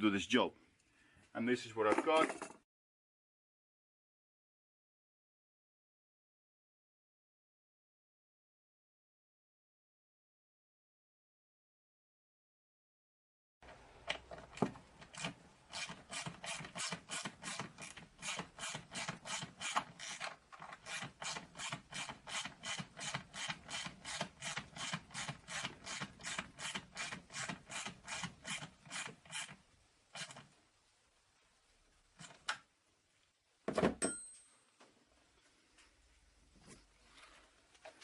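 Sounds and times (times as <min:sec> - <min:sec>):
hand ratchet clicking: 0:15.1 - 0:29.6.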